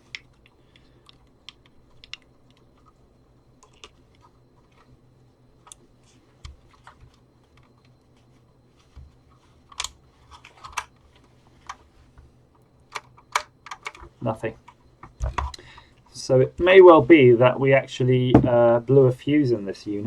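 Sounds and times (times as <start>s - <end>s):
faint low hum: 0.0s - 20.0s
small tools and plastic parts clicking: 3.6s - 4.9s, 9.7s - 11.8s, 12.9s - 15.6s.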